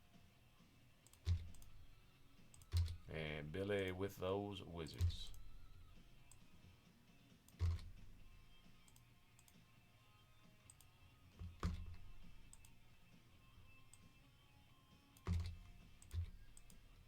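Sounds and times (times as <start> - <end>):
faint background music: 0.0 - 17.0
computer mouse clicks: 1.0 - 1.8, 2.5 - 3.1, 4.9 - 5.6, 7.5 - 9.6, 10.7 - 12.8, 15.2 - 16.9.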